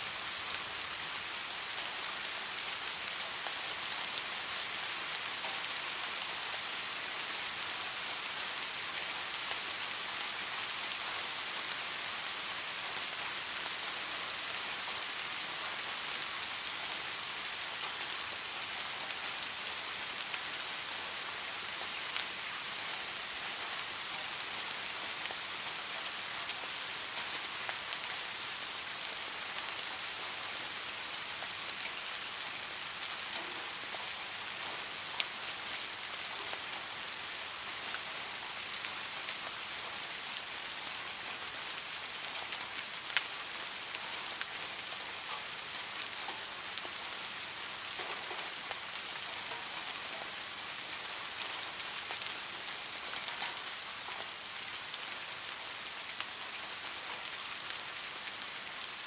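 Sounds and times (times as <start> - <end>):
rain pattering on a surface: 0.0 - 59.0.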